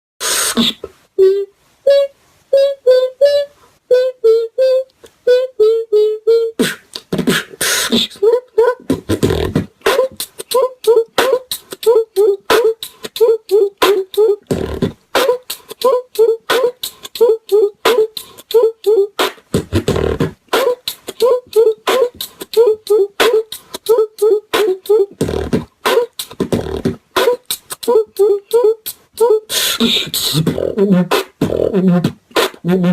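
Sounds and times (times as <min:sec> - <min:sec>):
hissing snare-like mouth bursts: 0:00.2 - 0:00.9, 0:06.6 - 0:08.2, 0:15.1 - 0:15.9, 0:19.2 - 0:19.9, 0:20.5 - 0:21.3, 0:21.9 - 0:22.6, 0:25.8 - 0:27.9, 0:28.8 - 0:31.4, 0:32.3 - 0:32.7
beatboxing pitched notes: 0:00.2 - 0:32.9.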